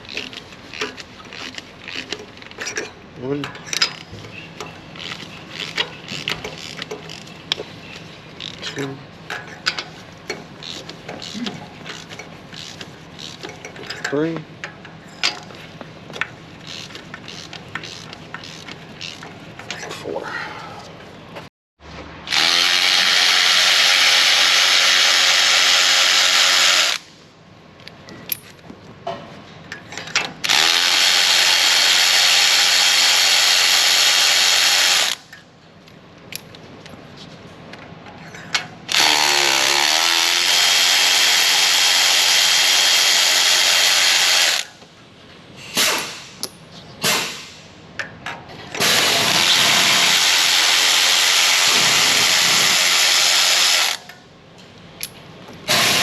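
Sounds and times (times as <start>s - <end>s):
cordless power tool spinning: 22.3s - 27.1s, 30.4s - 35.2s, 38.9s - 44.7s, 48.8s - 54.0s.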